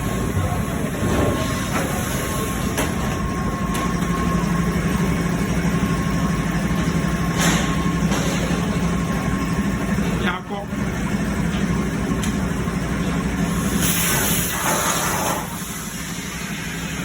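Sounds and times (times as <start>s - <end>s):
plasma cutter hissing: 13.5s - 16.9s.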